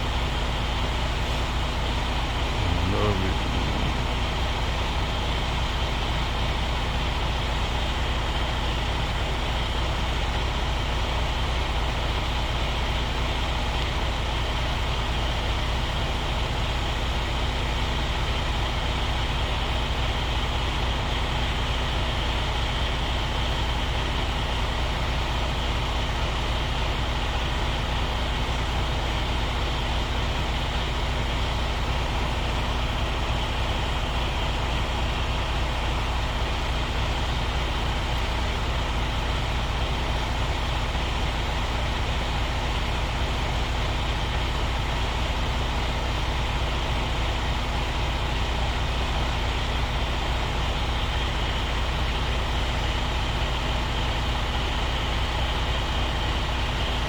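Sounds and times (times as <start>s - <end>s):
truck diesel engine rumbling: 0.0s - 10.2s.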